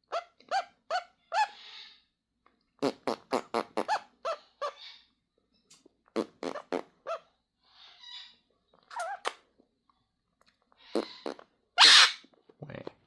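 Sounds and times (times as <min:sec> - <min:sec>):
parrot squeaky pops: 0:08.9 - 0:09.4.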